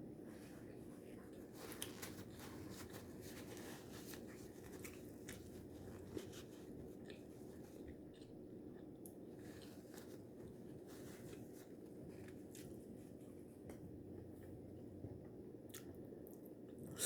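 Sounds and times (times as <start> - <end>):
chewing and crunching chips: 0.6 - 13.2.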